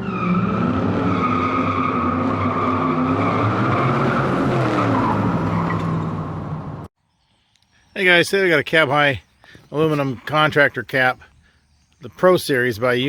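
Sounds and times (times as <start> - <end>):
tire squeal: 0.0 - 6.9.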